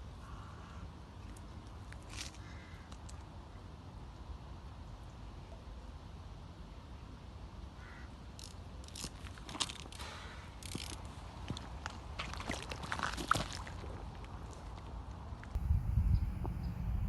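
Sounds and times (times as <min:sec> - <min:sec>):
low steady rumble: 0:15.6 - 0:17.0.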